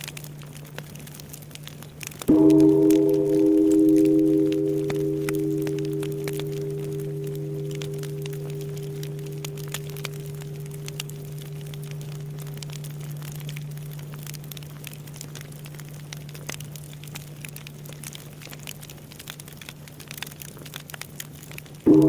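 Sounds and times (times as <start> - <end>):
bonfire crackling and popping: 0.0 - 22.0
temple bell hum: 2.3 - 18.0.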